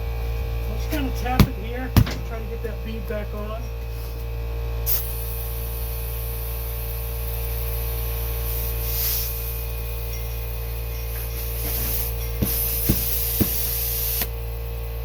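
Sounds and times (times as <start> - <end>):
air compressor humming: 0.0 - 15.0
mallet knocking tire: 1.4 - 2.4, 11.6 - 13.8
air hissing into tire: 3.9 - 14.4.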